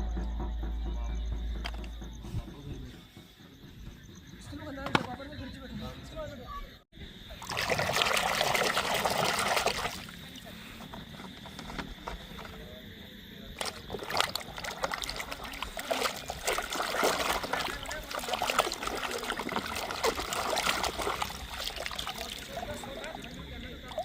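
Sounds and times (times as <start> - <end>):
water splashing and trickling: 7.2 - 24.0.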